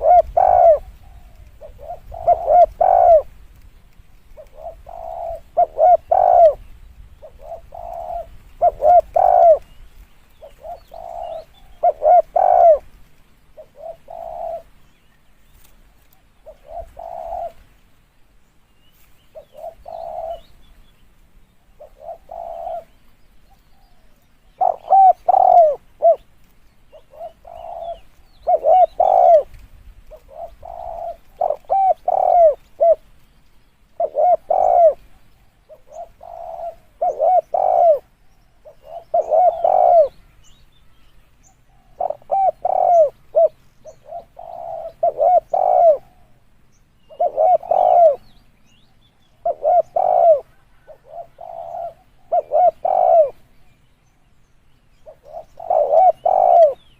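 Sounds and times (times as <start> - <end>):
dove cooing: 0.0 - 3.4, 4.3 - 9.8, 10.4 - 12.9, 13.6 - 14.8, 16.2 - 17.7, 19.3 - 20.6, 21.7 - 26.3, 26.9 - 33.1, 33.9 - 40.4, 41.6 - 46.4, 47.1 - 48.4, 49.3 - 53.5, 55.0 - 56.9.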